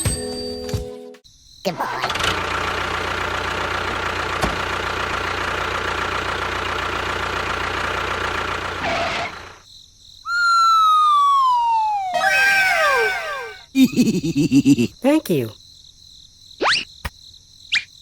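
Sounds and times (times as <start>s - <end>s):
falling pitched whistle: 10.3s - 13.7s.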